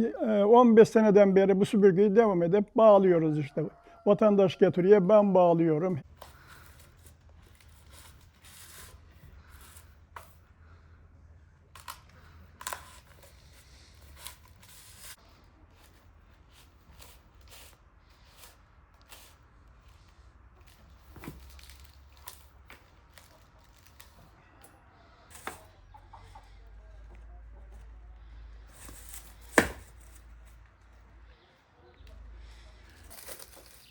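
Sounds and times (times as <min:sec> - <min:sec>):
broom straw rustling and crackling: 0:12.8 - 0:24.5, 0:25.3 - 0:26.3, 0:28.2 - 0:31.3, 0:32.3 - 0:33.9.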